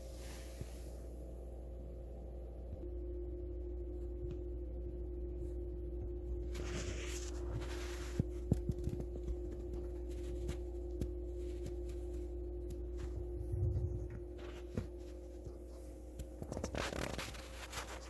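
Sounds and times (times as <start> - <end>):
low machine hum: 0.0 - 18.0
steady tone: 12.9 - 14.8.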